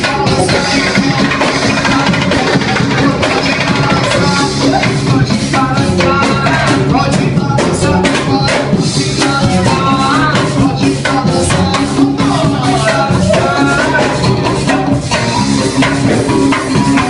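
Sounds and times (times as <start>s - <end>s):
upbeat band music: 0.0s - 17.0s.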